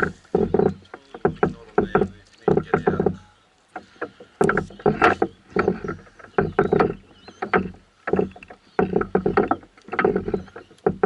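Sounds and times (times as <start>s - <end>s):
hollow knocks against canoe hull: 0.0s - 11.0s.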